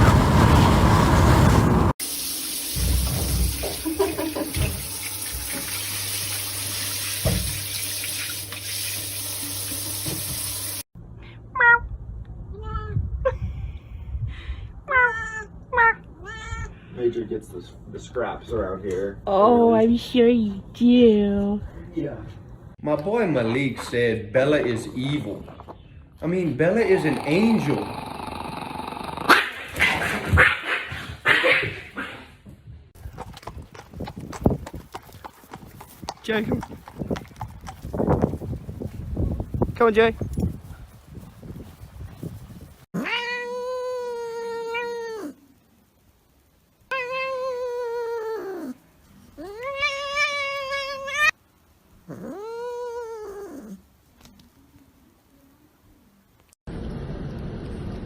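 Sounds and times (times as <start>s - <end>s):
cat yowling meows: 43.0s - 45.4s, 46.9s - 48.8s, 49.4s - 51.4s, 52.1s - 53.8s.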